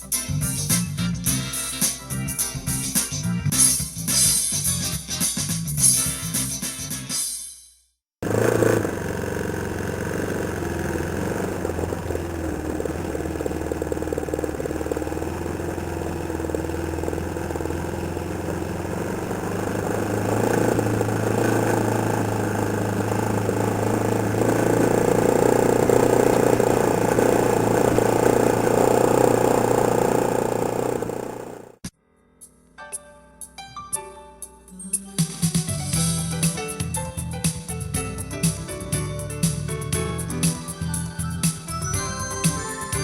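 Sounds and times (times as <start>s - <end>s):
atv engine running: 8.2s - 31.8s.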